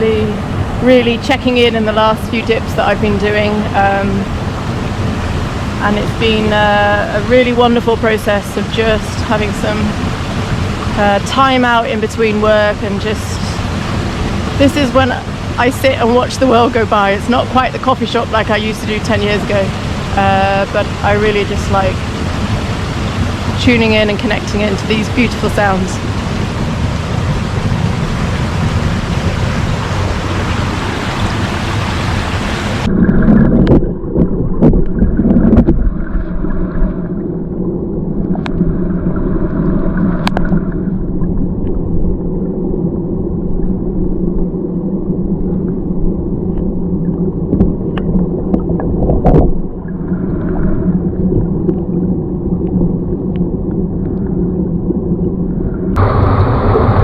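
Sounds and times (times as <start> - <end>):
muffled underwater gurgling flow: 0.0 - 57.0
river water rushing: 3.2 - 32.9, 56.0 - 57.0
underwater clicks and knocks: 32.9 - 37.1, 38.2 - 42.2, 46.5 - 54.4.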